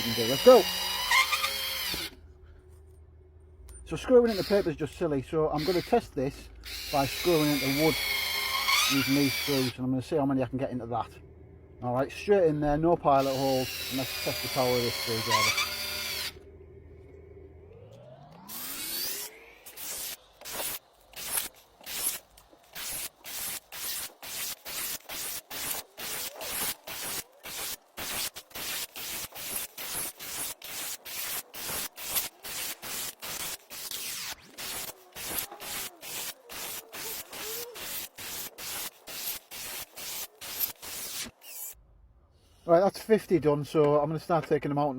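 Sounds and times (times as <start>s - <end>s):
cordless screwdriver driving screws: 0.0s - 2.2s, 13.2s - 16.3s, 18.4s - 41.8s.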